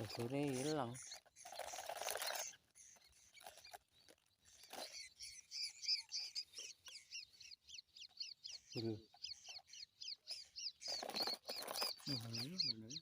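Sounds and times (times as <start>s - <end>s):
small bird chirping: 0.0s - 13.0s.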